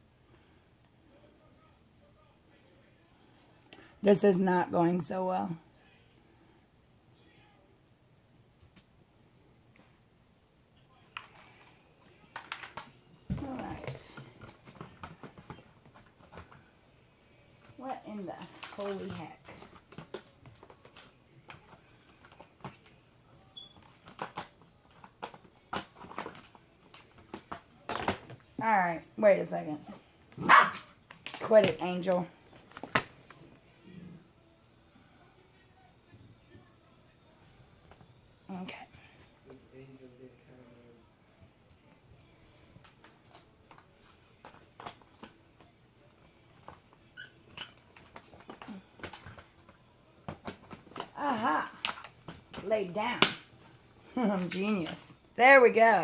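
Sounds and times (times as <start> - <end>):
plastic parts clicking and knocking: 12.3 - 12.9, 23.7 - 28.4.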